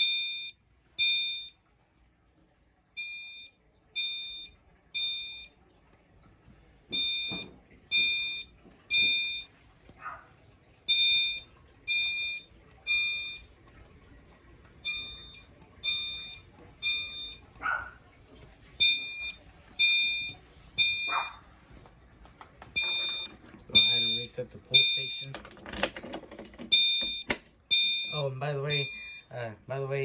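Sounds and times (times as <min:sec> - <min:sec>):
fire alarm chimes: 0:00.0 - 0:01.7, 0:03.0 - 0:05.6, 0:06.9 - 0:09.7, 0:10.8 - 0:14.2, 0:14.8 - 0:17.8, 0:18.6 - 0:21.4, 0:22.8 - 0:25.4, 0:26.7 - 0:29.4.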